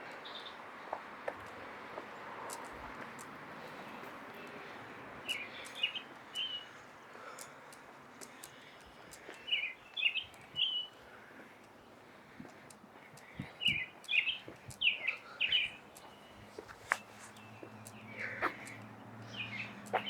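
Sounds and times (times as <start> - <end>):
distant traffic: 0.0 - 20.0
small bird chirping: 2.5 - 20.0.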